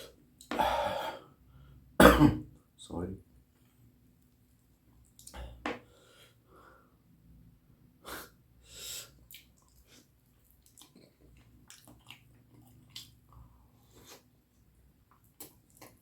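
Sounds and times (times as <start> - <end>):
wet chewing and lip smacks: 4.2 - 5.4, 9.2 - 16.0.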